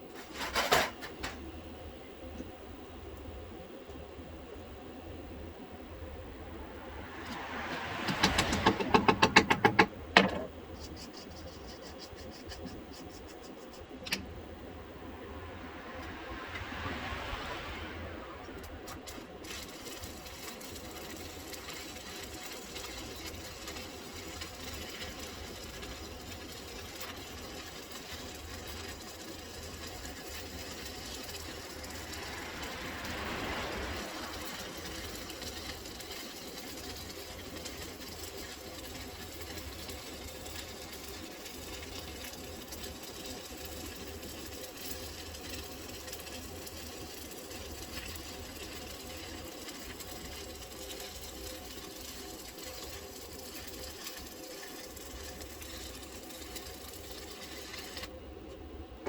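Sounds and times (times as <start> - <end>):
welding arc crackling and buzzing: 18.6 - 58.2.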